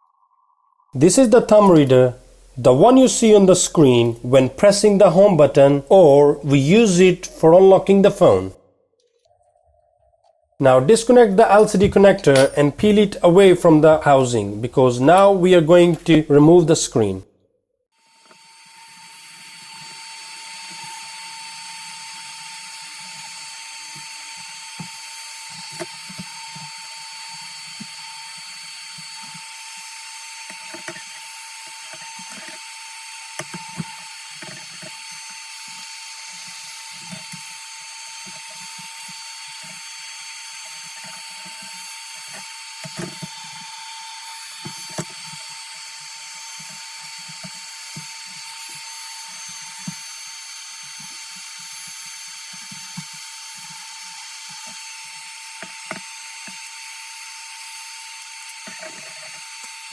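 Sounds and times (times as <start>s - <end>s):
steady hiss: 1.0s - 7.2s
hand tools scraping a phone: 18.0s - 59.9s.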